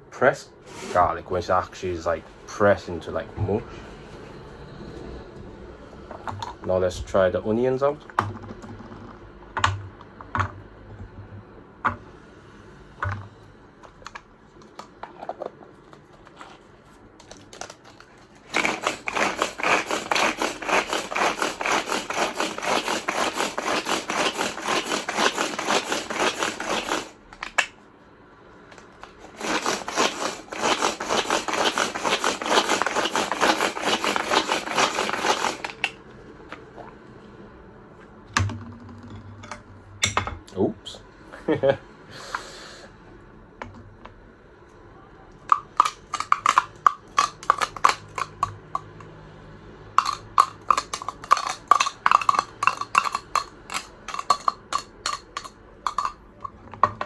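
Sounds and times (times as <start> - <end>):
pull-cord chopper rapid clicking: 18.4 - 27.2, 29.2 - 36.0, 50.0 - 56.1.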